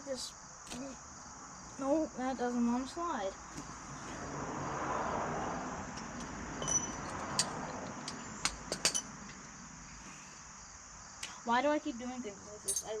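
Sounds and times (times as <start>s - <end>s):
metallic clinks of tools: 6.6s - 9.1s, 12.7s - 13.0s.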